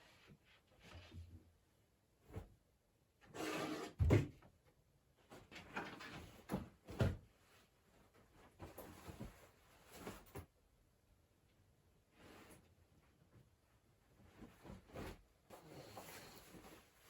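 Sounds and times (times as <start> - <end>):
object scraping and sliding: 3.4 - 4.0.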